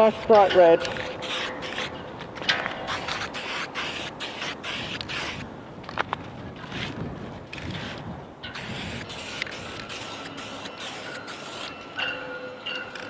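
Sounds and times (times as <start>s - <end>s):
spray paint hissing: 0.0s - 1.9s, 2.9s - 5.5s, 8.5s - 11.8s.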